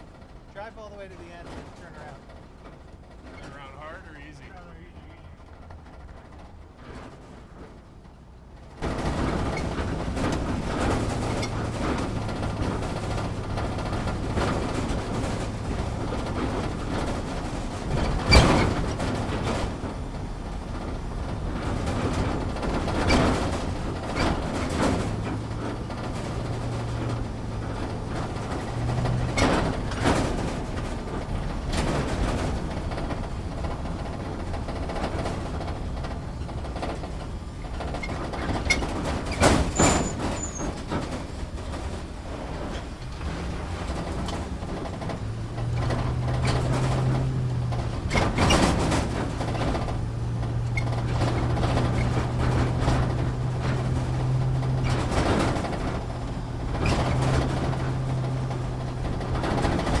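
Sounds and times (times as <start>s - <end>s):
engine hum: 0.0s - 60.0s
knocks and rattles: 0.0s - 60.0s
vehicle rumble on rough ground: 0.0s - 60.0s.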